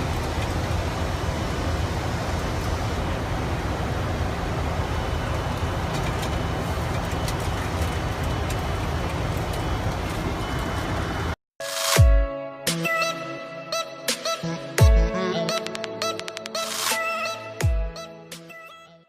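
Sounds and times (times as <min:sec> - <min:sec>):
aircraft engines and rushing air: 0:00.0 - 0:11.4.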